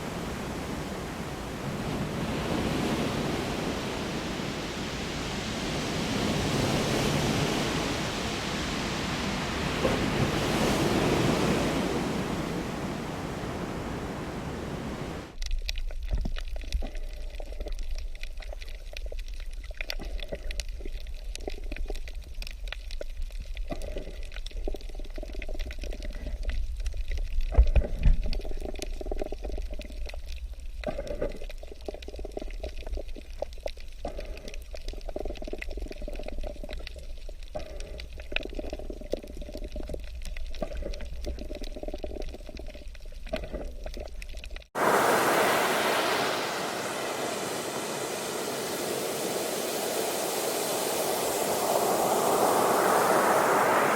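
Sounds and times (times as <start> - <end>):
water rushing: 0.0 - 15.4, 44.8 - 53.9
water trickling and gurgling: 16.0 - 53.9
small water splashes: 38.5 - 53.9.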